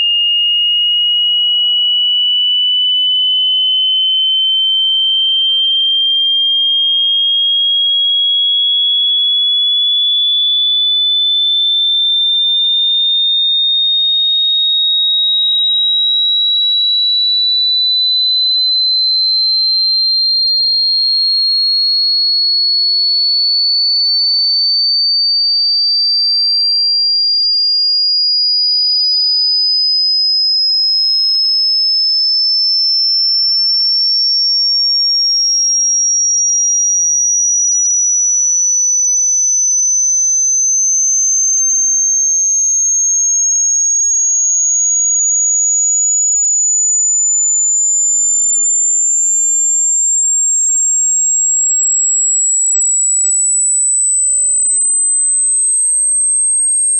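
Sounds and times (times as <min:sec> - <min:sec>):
high-pitched rising test tone: 0:35.9 - 0:41.9.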